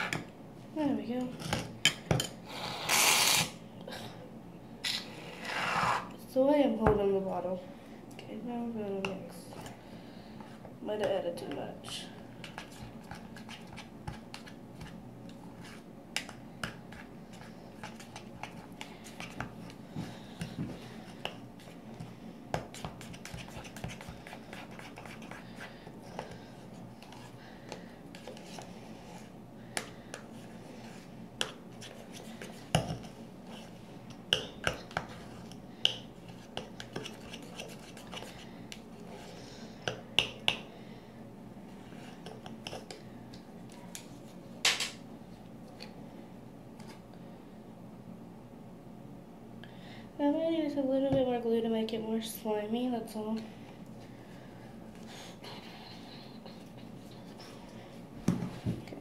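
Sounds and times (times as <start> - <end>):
slime stirred with utensil: 12.4 - 19.8, 22.6 - 27.4, 34.4 - 39.3.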